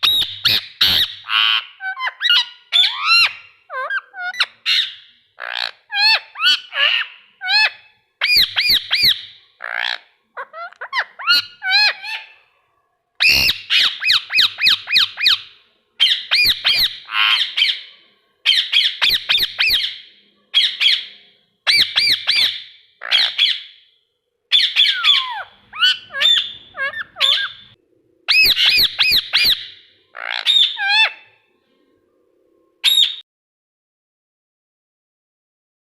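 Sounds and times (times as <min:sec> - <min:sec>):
parrot screeching: 0:00.0 - 0:12.4, 0:13.2 - 0:17.9, 0:18.5 - 0:20.0, 0:20.6 - 0:23.8, 0:24.5 - 0:31.3.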